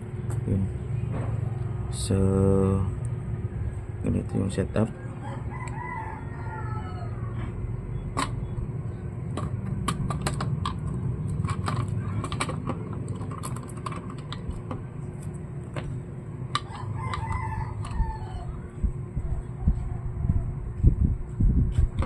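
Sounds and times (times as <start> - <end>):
rooster crowing: 4.9 - 7.6, 16.6 - 20.9.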